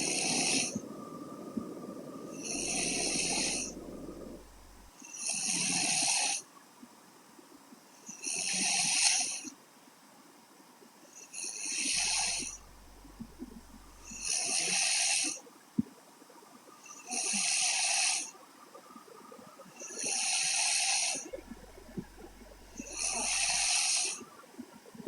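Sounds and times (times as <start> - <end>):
woman snoring: 2.3 - 4.9, 11.8 - 14.3, 20.2 - 24.1.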